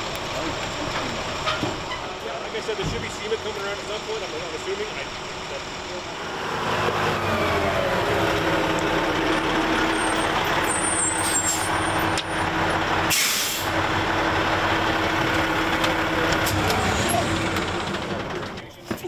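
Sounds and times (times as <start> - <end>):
heavy truck engine running: 0.0 - 19.0
air brake hiss: 13.1 - 13.7.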